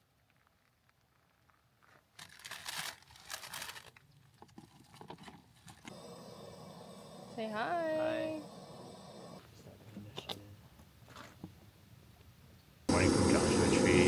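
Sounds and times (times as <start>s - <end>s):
faint steady hum: 5.9s - 9.8s.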